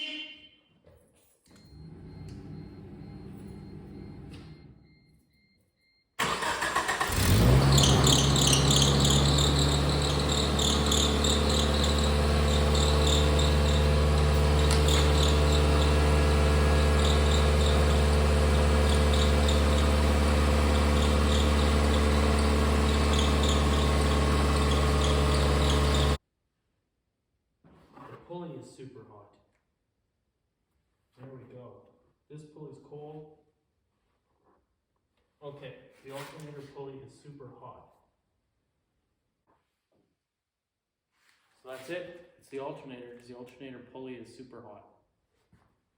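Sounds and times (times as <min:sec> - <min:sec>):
car engine running: 0:06.2 - 0:26.2
high-pitched squeal: 0:07.5 - 0:26.2.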